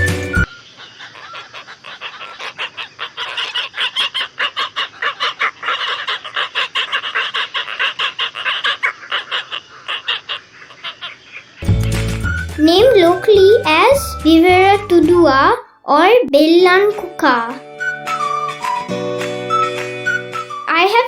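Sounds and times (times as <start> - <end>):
storks calling harshly: 0.7 - 12.0.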